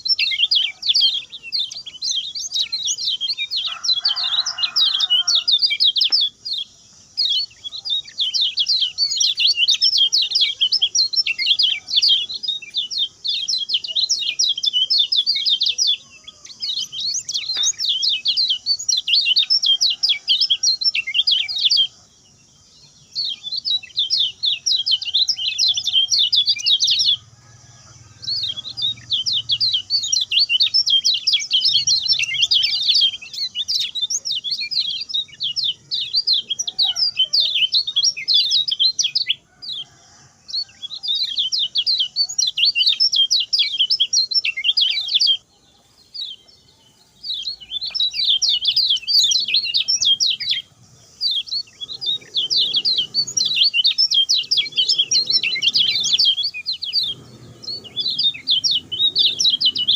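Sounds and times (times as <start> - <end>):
warbler singing rapid high notes: 0.0 - 21.9, 28.2 - 39.4, 47.0 - 59.9.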